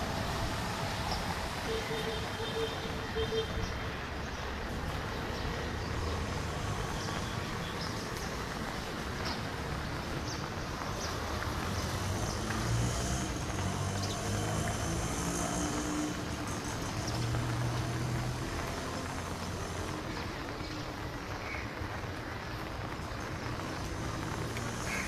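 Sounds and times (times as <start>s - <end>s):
street traffic: 0.0s - 25.0s
vehicle approaching: 11.0s - 20.6s.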